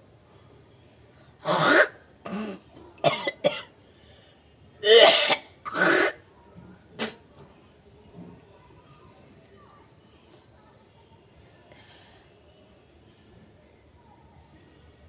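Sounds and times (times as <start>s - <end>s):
woman clearing nose and throat: 1.4s - 3.7s, 4.8s - 6.2s.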